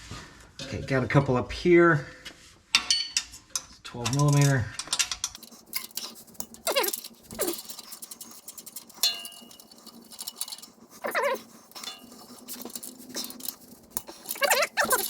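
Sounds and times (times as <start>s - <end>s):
metal tools clinking: 4.0s - 15.0s.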